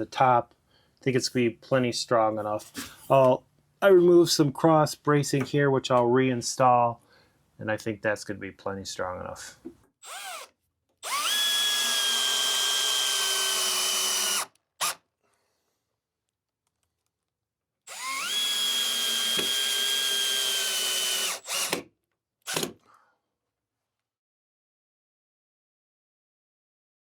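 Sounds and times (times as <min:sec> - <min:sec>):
power drill driving screws: 0:10.0 - 0:15.0, 0:17.9 - 0:21.9, 0:22.5 - 0:22.8.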